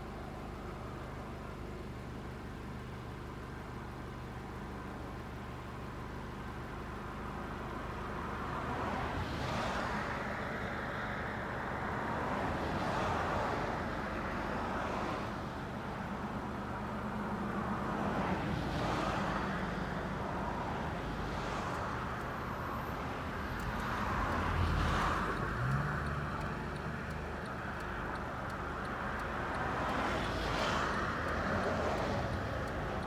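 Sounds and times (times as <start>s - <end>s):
low vehicle engine hum: 15.5s - 33.0s.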